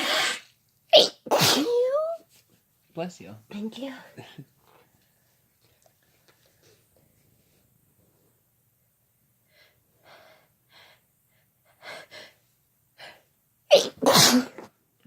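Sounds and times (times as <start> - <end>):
person sneezing: 0.0 - 1.9, 13.7 - 14.7.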